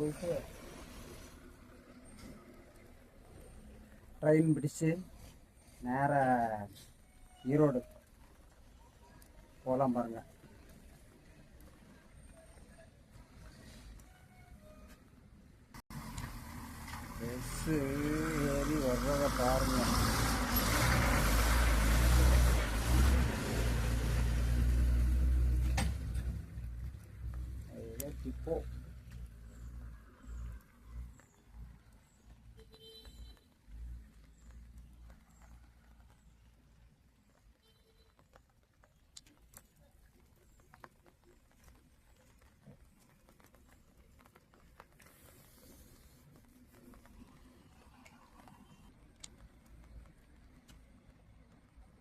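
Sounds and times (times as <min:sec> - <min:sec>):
bus engine rumbling: 0:15.0 - 0:32.3
soft taps and ticks: 0:28.9 - 0:52.0.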